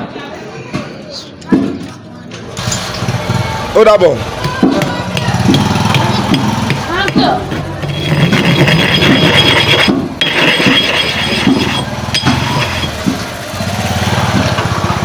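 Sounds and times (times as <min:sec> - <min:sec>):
steady engine hum: 0:02.6 - 0:15.0
sharpening stone rubbing: 0:05.2 - 0:13.3.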